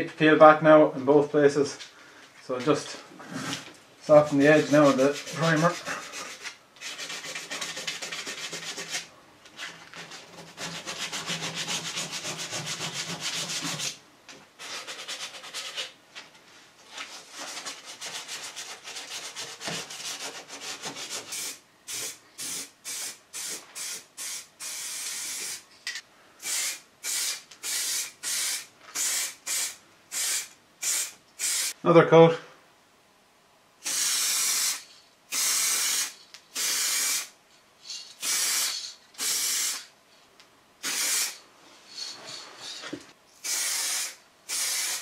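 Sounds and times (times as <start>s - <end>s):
hand sanding with abrasive paper: 4.1s - 14.0s, 14.6s - 16.0s, 16.9s - 24.5s.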